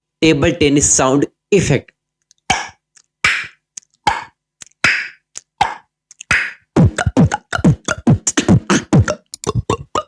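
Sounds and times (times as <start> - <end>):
beatboxed mouth pops: 2.3 - 10.0.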